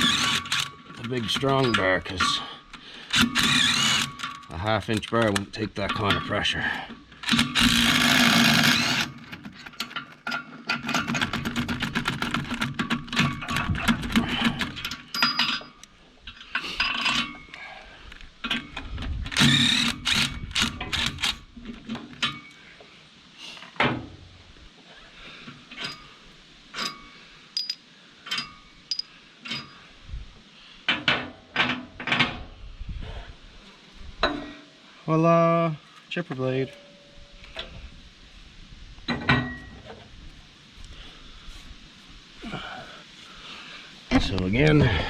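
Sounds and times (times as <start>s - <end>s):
ratchet clicking: 0.0s - 0.8s, 3.1s - 5.3s, 7.2s - 9.2s, 19.3s - 21.5s
metal clinks and knocks: 9.3s - 17.5s, 25.7s - 29.8s.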